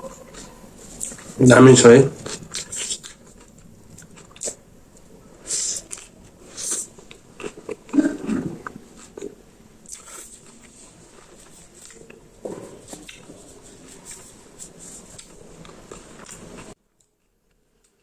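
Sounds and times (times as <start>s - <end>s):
person chewing food: 0.0s - 1.4s, 2.2s - 18.0s
short hissing sounds: 5.4s - 7.0s.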